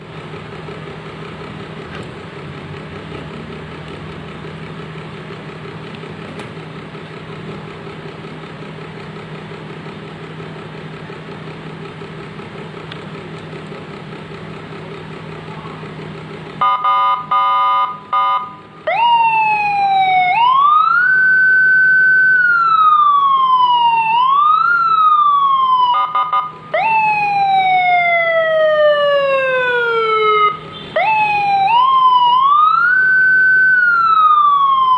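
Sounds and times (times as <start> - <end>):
electronic motorcycle siren: 16.6 - 34.9.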